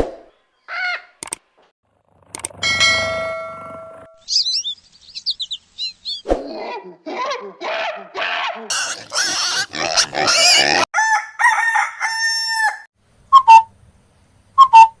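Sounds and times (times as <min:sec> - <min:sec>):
birds calling: 0:04.2 - 0:06.3.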